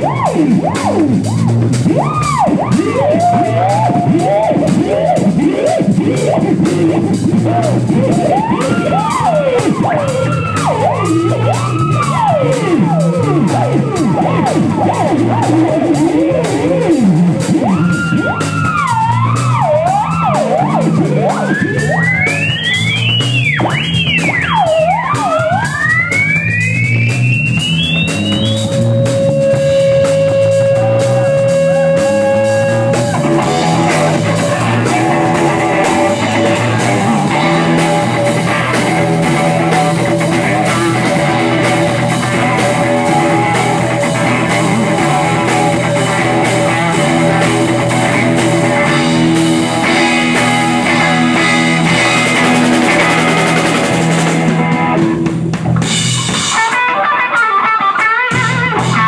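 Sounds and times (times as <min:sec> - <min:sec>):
live rock band playing: 0:00.0 - 0:59.0
guitar sliding high note: 0:27.2 - 0:55.2.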